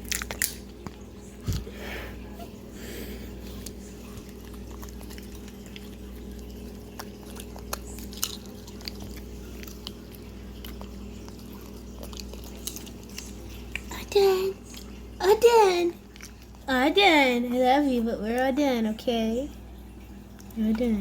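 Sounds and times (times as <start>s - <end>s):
puppy crunching carrot: 0.0s - 1.7s, 3.4s - 18.5s
steady low hum: 0.0s - 21.0s.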